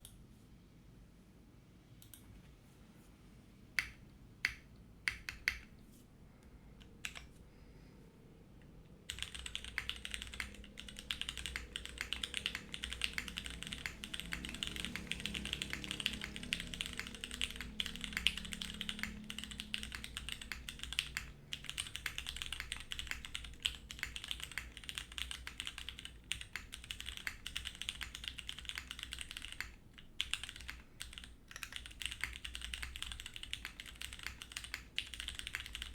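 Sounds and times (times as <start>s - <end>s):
mechanical keyboard typing: 4.5s - 5.7s, 9.1s - 35.9s.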